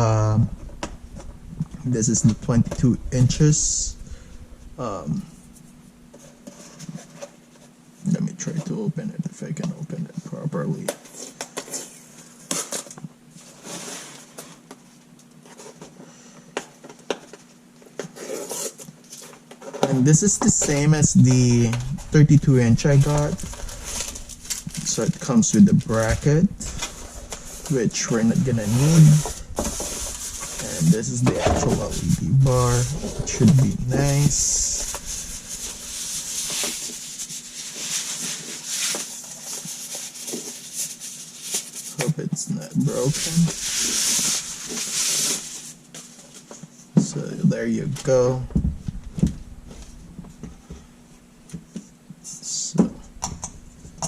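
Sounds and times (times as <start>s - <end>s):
packaging rustling and scraping: 10.9s - 46.9s.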